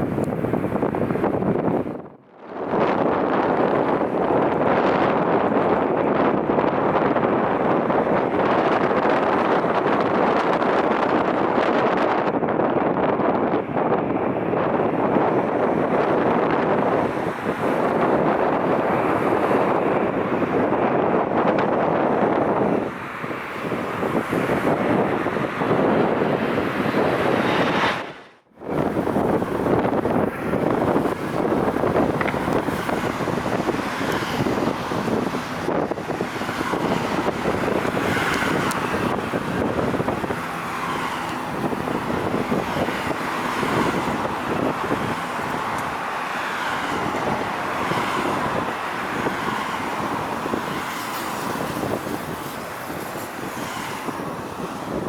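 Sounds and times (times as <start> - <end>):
wind buffeting microphone: 0.0 - 55.0.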